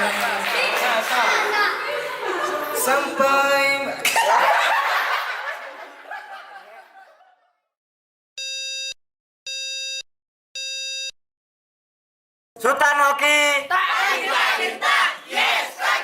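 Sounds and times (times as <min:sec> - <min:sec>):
group laughter and chatter: 0:00.0 - 0:07.7.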